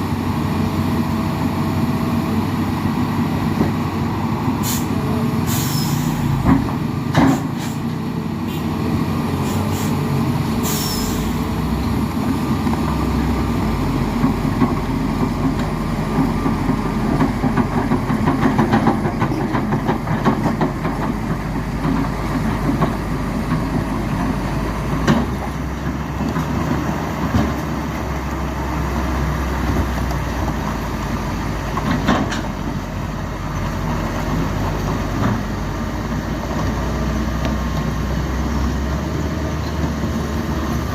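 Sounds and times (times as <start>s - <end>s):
diesel truck engine running: 0.0s - 40.9s
air brake hisses: 4.6s - 6.3s, 7.3s - 7.9s, 9.4s - 10.0s, 10.6s - 11.5s.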